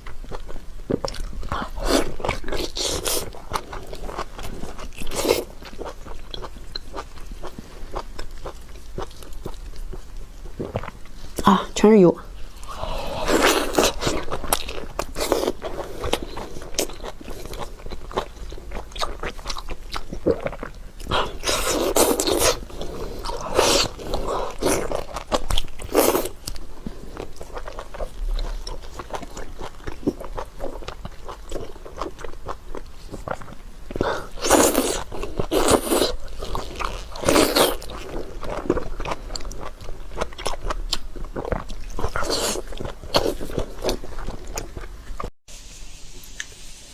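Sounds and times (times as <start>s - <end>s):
chewing and biting meat: 13.2s - 45.3s.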